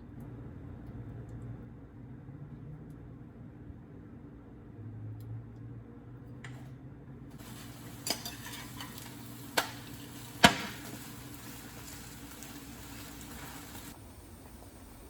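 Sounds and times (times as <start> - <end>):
food sizzling in a pan: 7.4 - 15.0
utensil knocking on a pan: 7.5 - 12.0.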